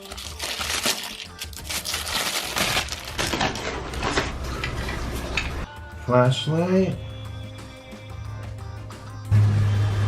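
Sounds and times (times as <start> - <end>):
plastic packaging crinkling: 0.0 - 4.6
background music: 0.0 - 10.0.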